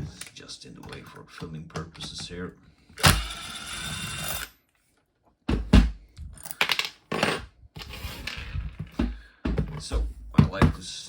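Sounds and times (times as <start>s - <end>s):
power driver motor whirring: 3.0s - 4.5s.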